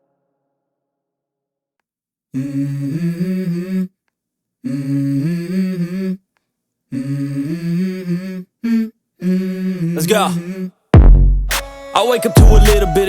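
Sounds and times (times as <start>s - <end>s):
wordless hummed vocal: 2.4s - 3.9s, 4.6s - 6.2s, 6.9s - 10.8s, 12.0s - 13.0s.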